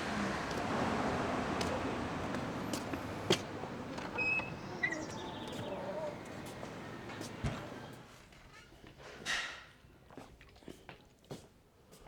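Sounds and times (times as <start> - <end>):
steady background noise: 0.0 - 8.0.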